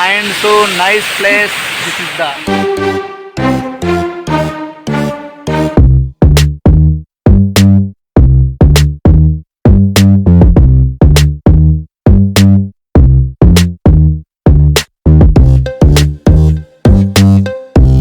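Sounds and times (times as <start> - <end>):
electronic music with drum-machine beat: 15.3 - 18.0.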